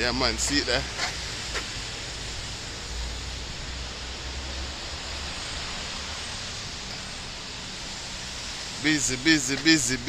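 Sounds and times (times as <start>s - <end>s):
rain falling: 0.0s - 10.0s.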